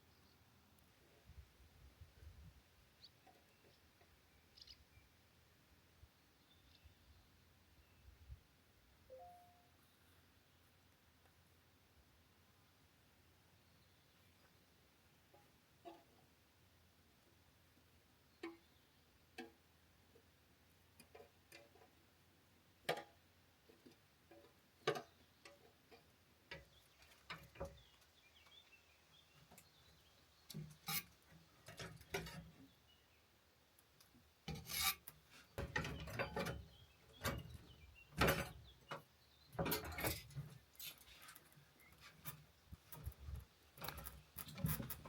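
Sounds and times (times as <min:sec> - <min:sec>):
light clicks and knocks: 0:34.0 - 0:45.0
scraping and rubbing strokes: 0:34.5 - 0:36.0.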